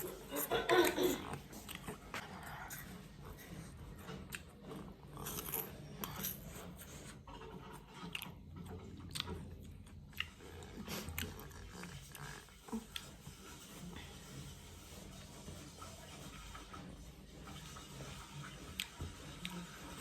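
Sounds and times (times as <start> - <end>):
person chewing: 0.0 - 13.6, 18.4 - 20.0.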